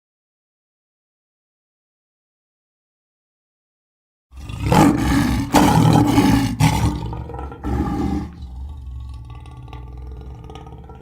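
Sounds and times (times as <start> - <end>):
lion roaring: 4.4 - 11.0
low rumble of lion: 4.4 - 11.0.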